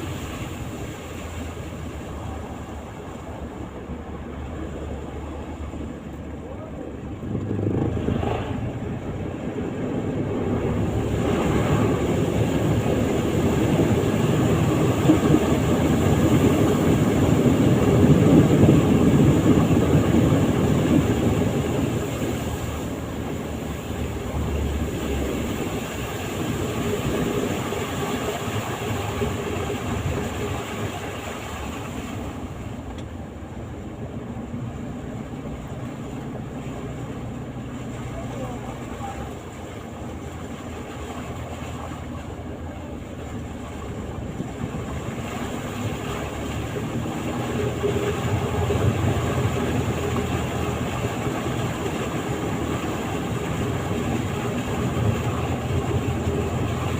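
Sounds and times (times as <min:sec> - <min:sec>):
vehicle rumble: 0:00.0 - 0:56.9.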